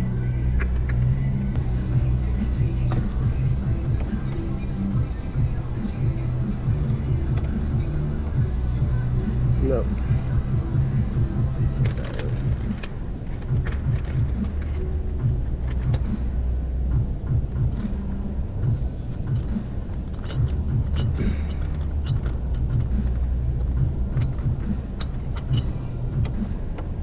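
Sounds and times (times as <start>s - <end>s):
steady low rumble: 0.0s - 27.0s
hand tools clinking: 11.6s - 14.8s, 15.5s - 16.2s, 19.2s - 26.4s.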